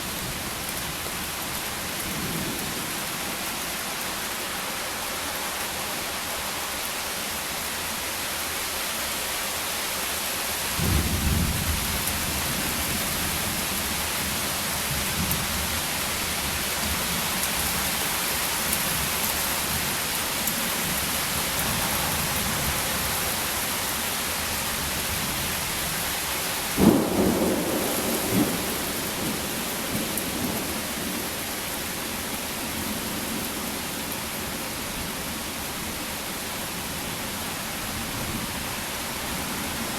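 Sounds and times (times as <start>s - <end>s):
steady rain falling: 0.0s - 39.9s
thunder rumbling: 26.8s - 30.8s.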